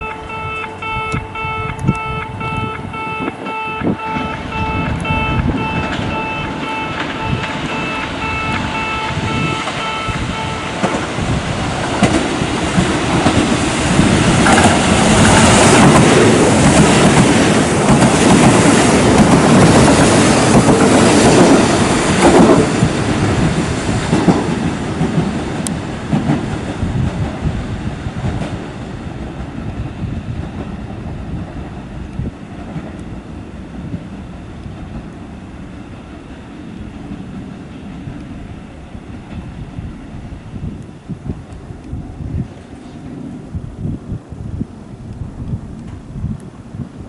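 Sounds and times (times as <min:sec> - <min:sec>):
electronic warning tone beeping: 0:00.0 - 0:11.0
rail joint clacks: 0:00.0 - 0:39.7
train passing at speed: 0:00.0 - 0:47.0.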